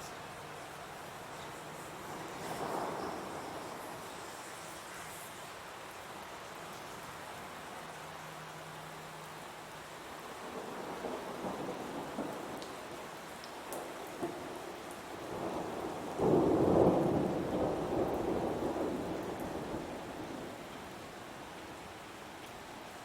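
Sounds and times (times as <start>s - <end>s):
heavy rain falling: 0.0s - 23.0s
thunder: 2.2s - 4.1s, 10.5s - 12.8s, 13.7s - 20.6s.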